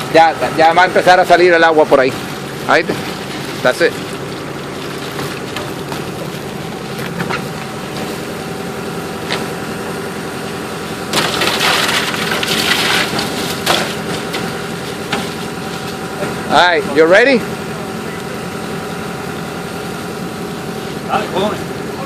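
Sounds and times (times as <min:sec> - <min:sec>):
diesel engine idling: 0:00.0 - 0:22.0
loud rough crunching: 0:11.0 - 0:16.4.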